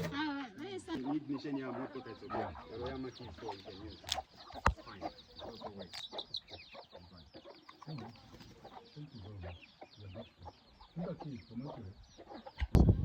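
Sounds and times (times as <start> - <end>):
chickens clucking: 0.0 - 13.0.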